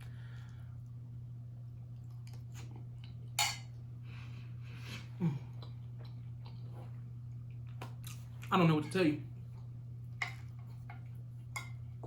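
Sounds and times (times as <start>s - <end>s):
steady low hum: 0.0s - 12.0s
chewing: 5.5s - 8.5s.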